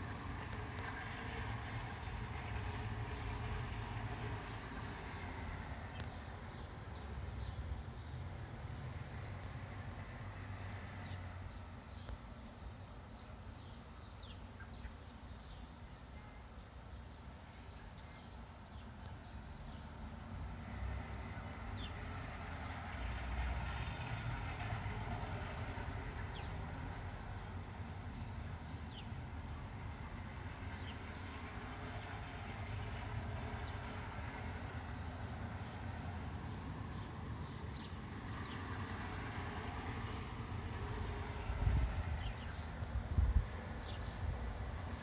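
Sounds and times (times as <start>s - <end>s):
low rumble from the sky: 32.6s - 45.0s.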